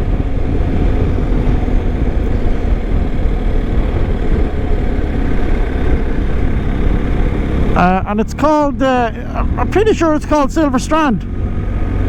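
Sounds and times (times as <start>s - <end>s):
motorcycle engine rumble: 0.0s - 12.0s
wind and road noise: 0.0s - 12.0s.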